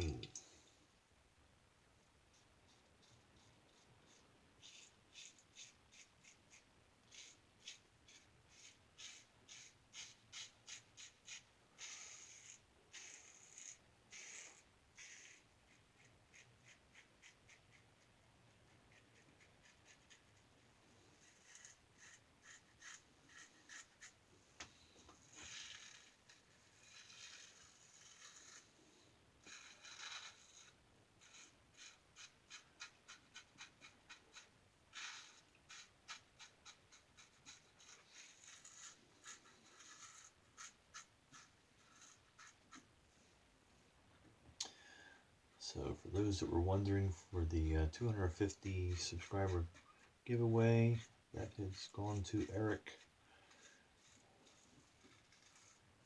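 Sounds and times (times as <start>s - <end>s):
razor scraping stubble: 4.1s - 17.8s, 21.2s - 24.2s, 25.3s - 28.7s, 29.4s - 42.9s, 45.7s - 55.9s.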